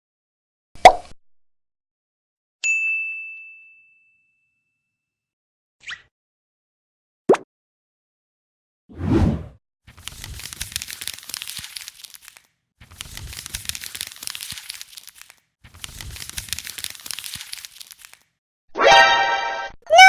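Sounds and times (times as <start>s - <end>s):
wrapper crinkling and tearing: 9.9s - 18.4s.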